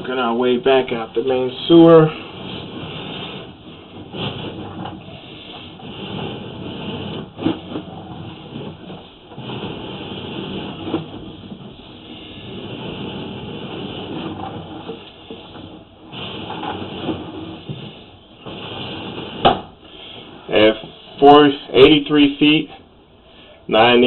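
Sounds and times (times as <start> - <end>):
camera rattling through pipe: 1.7 - 19.7.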